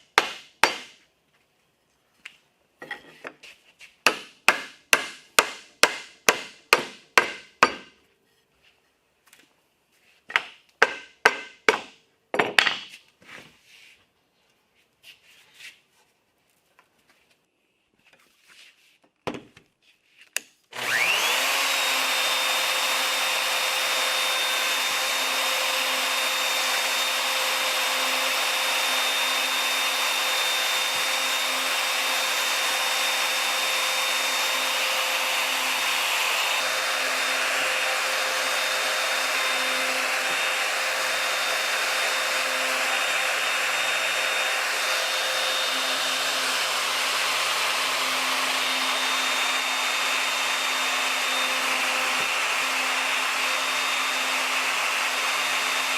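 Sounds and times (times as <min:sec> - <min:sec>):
power tool whining: 0:20.7 - 0:55.9.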